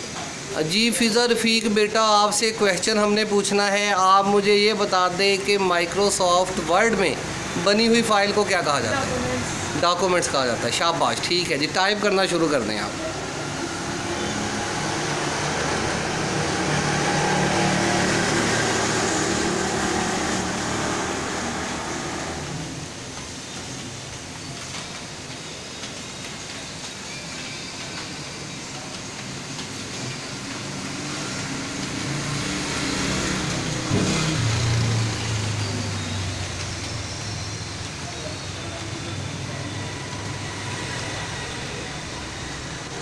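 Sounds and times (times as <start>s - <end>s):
steady machine hum: 5.9s - 23.5s
vehicle engine passing by: 12.4s - 23.0s, 30.7s - 43.0s.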